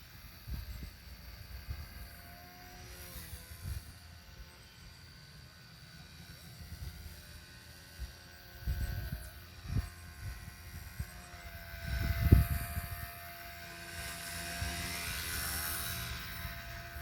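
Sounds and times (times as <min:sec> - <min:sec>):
rc helicopter motor whine: 0:00.0 - 0:17.0
wind buffeting microphone: 0:08.0 - 0:13.3.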